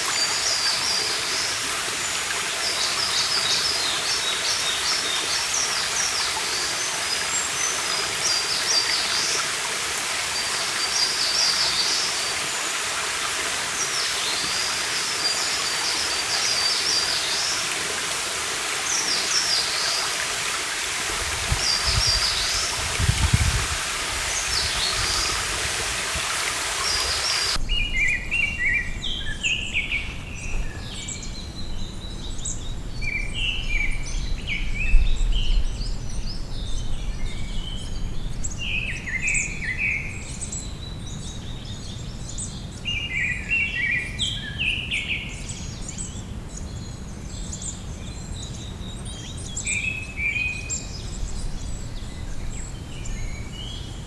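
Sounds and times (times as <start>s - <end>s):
rushing stream water: 0.0s - 27.6s
songbirds singing and chirping: 0.0s - 54.0s.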